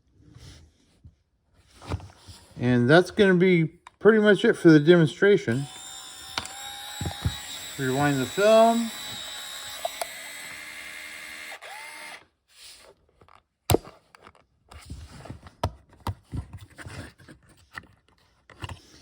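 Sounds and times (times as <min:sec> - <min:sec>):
camera motor whirring: 0:05.5 - 0:12.3
camera handling clicks: 0:09.8 - 0:10.2.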